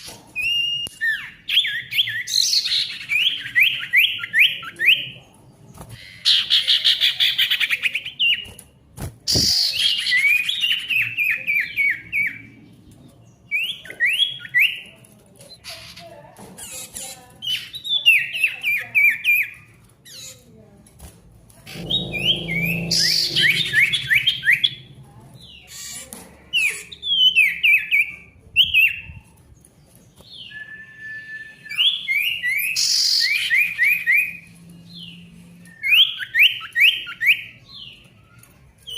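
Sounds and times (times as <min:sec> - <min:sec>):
songbird chirping: 0:21.6 - 0:29.1.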